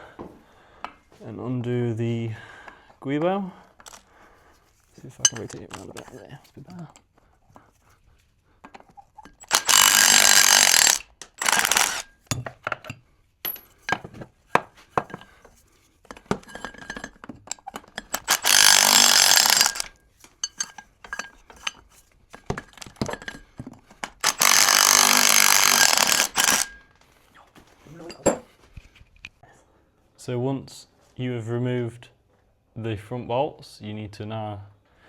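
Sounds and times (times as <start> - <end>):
impact wrench running: 9.4 - 12.1, 18.1 - 19.9, 24.1 - 26.8.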